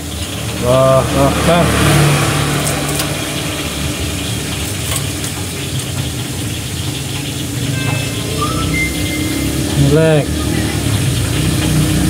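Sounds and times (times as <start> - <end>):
vehicle engine idling: 0.0 - 12.0.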